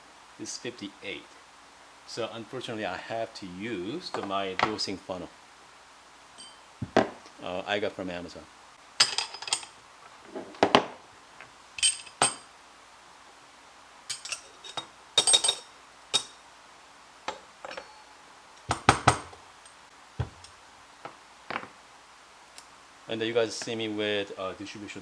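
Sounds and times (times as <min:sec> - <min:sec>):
metal espresso tools clinking: 0:06.4 - 0:06.6, 0:09.0 - 0:09.7, 0:11.8 - 0:12.5, 0:14.1 - 0:16.4, 0:17.3 - 0:18.1.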